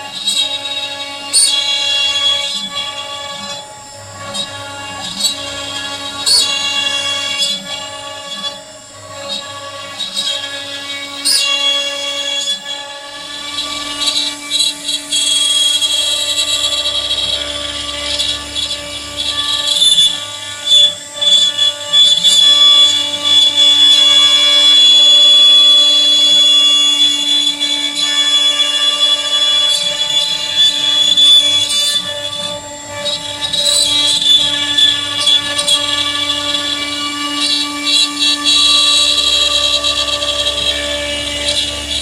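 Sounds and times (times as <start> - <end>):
router spindle carving wood: 0.0 - 42.0.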